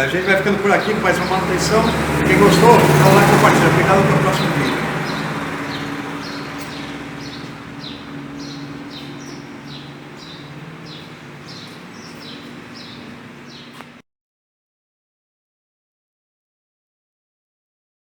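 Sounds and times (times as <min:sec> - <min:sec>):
steady low hum: 0:00.0 - 0:14.0
small bird chirping: 0:03.9 - 0:14.0.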